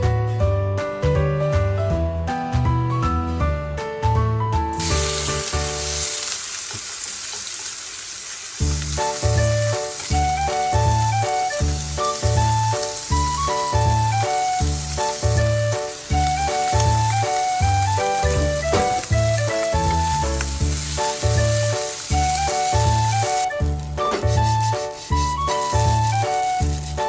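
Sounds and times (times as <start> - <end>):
food sizzling in a pan: 4.7 - 27.0
background music with a beat: 9.0 - 27.0.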